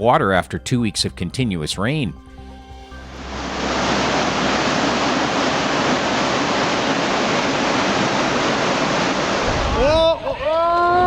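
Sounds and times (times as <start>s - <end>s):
rushing floodwater: 3.2s - 9.9s.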